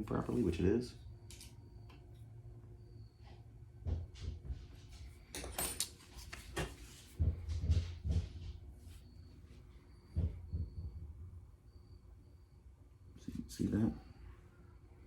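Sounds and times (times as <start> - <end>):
small hardware clicking and scraping: 1.3 - 2.0.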